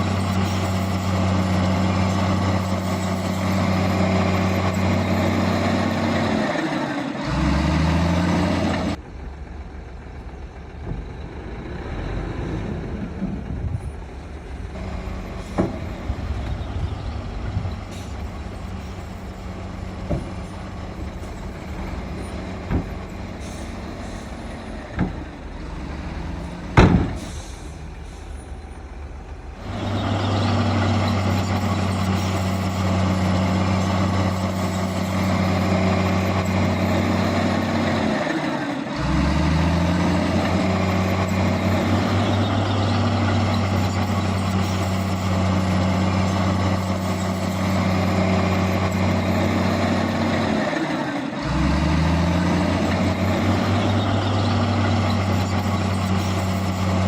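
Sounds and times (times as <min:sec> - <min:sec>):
heavy diesel machinery running: 0:00.0 - 0:57.0
loud bang: 0:21.3 - 0:28.6.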